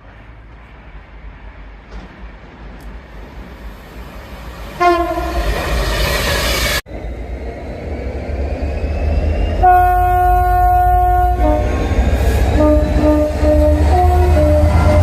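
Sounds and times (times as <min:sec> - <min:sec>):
low train rumble: 0:00.0 - 0:15.0
train horn: 0:04.8 - 0:05.5, 0:09.6 - 0:15.0.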